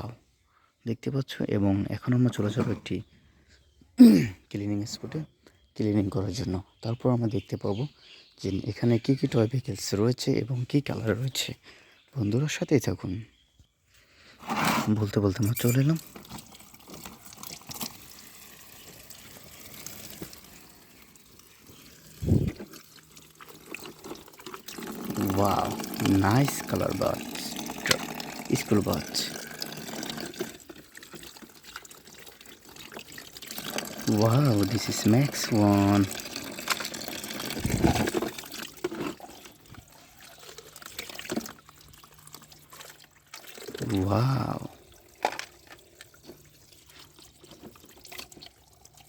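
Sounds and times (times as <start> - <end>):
water running and trickling: 15.4 - 49.0.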